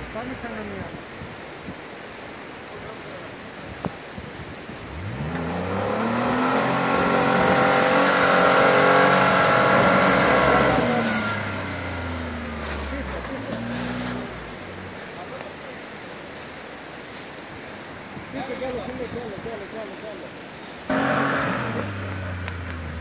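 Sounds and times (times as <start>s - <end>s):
car engine revving: 4.9s - 15.0s, 20.9s - 23.0s.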